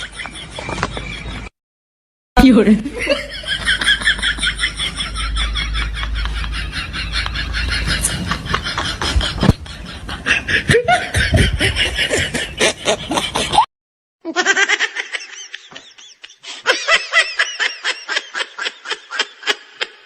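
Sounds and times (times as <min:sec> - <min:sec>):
repeated ha-ha laughter: 0:00.0 - 0:01.5, 0:02.9 - 0:20.0
rapid laughing: 0:03.0 - 0:13.7.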